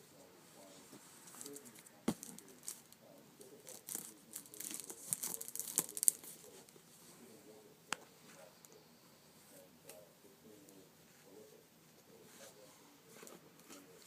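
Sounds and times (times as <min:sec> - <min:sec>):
crinkling and rustling: 0:00.6 - 0:06.9, 0:12.3 - 0:14.0.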